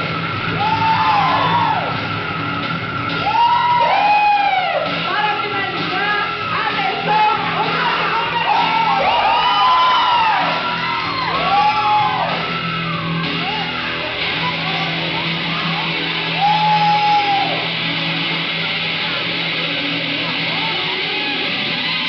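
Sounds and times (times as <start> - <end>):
shouted and sung vocals: 0.0 - 2.0, 3.2 - 14.0
heavy metal music: 0.0 - 22.0.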